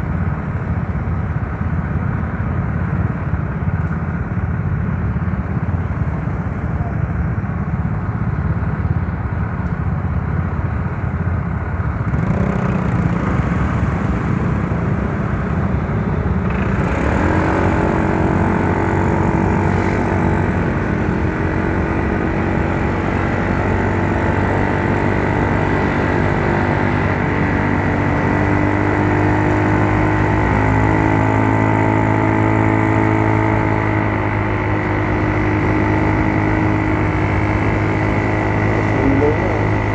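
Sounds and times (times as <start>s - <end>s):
wind and road rush: 0.0s - 39.9s
scooter engine humming: 13.0s - 39.9s.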